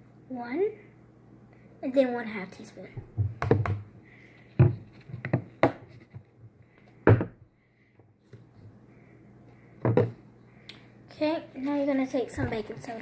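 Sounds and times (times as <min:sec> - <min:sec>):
faint low hum: 0:00.0 - 0:13.0
objects knocking on a table: 0:03.1 - 0:03.9, 0:04.6 - 0:06.2, 0:07.0 - 0:07.4, 0:09.8 - 0:10.2.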